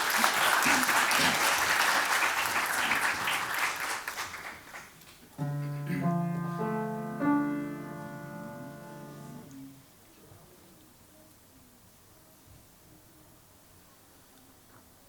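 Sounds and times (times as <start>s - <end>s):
audience applause: 0.0s - 6.1s
piano chord: 5.4s - 9.7s.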